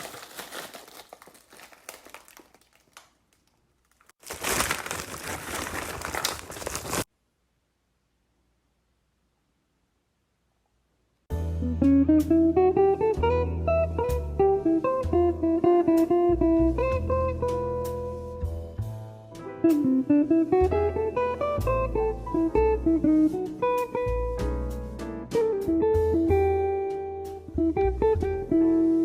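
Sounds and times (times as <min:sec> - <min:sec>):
plucked guitar melody: 0:11.5 - 0:29.0.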